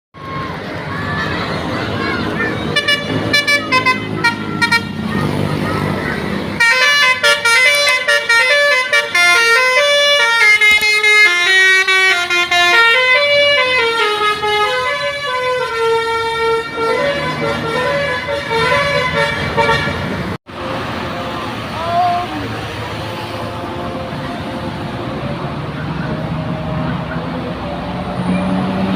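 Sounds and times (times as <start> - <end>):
multi-tone bus air horn melody: 2.6 - 5.1, 6.6 - 25.3.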